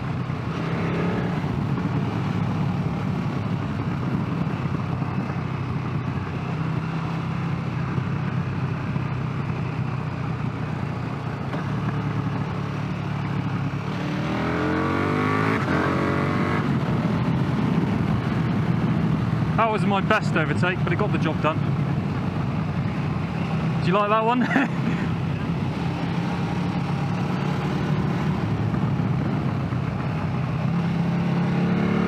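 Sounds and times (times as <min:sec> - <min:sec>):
wind noise: 0:00.0 - 0:06.6, 0:13.3 - 0:23.8, 0:24.7 - 0:32.0
motorcycle engine revving: 0:00.0 - 0:32.0.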